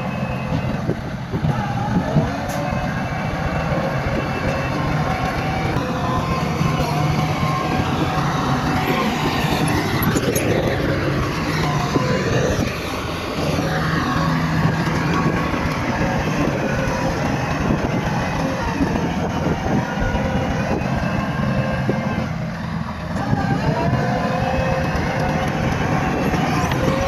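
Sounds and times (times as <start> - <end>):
bulldozer diesel engine under load: 0.0 - 27.0.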